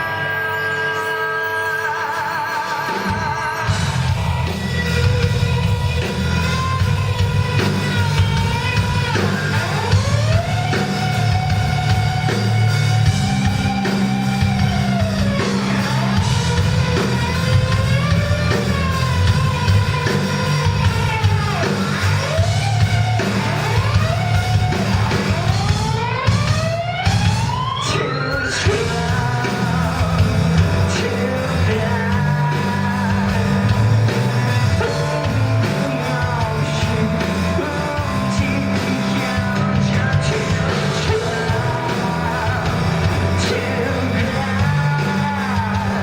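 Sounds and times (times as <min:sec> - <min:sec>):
gliding lead melody: 0:00.0 - 0:46.0
rock band playing live: 0:00.0 - 0:46.0.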